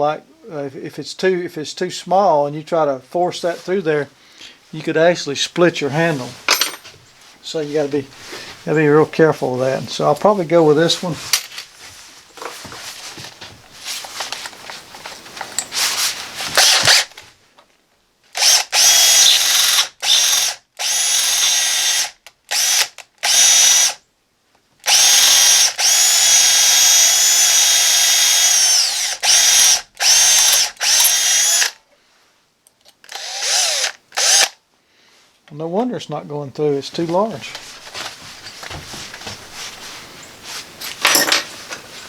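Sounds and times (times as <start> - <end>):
clicks and rattling of drill: 16.5 - 17.2, 24.9 - 31.8, 32.7 - 34.6
electric drill whine: 16.6 - 17.1, 18.4 - 24.0, 24.9 - 31.8, 33.1 - 34.6.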